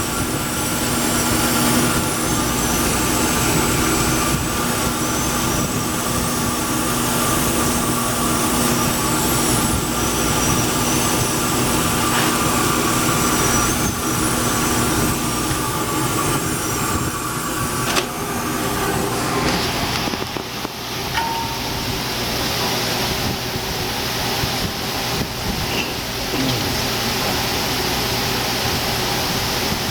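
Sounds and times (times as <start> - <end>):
power tool whining: 0.0 - 20.6.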